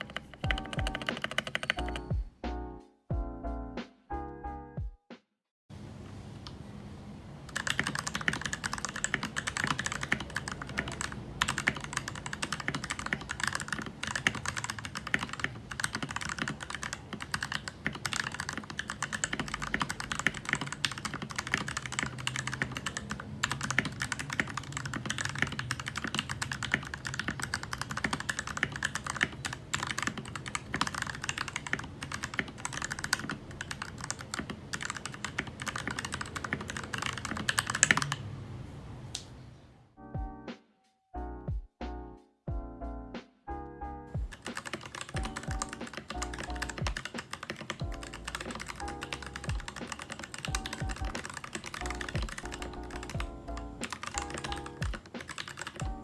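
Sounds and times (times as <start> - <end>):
mechanical keyboard typing: 0.0 - 2.1, 7.5 - 38.2, 44.3 - 56.0.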